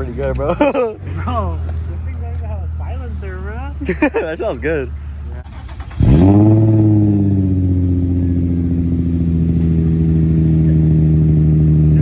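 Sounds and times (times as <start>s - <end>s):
loud low engine drone: 4.7s - 12.0s.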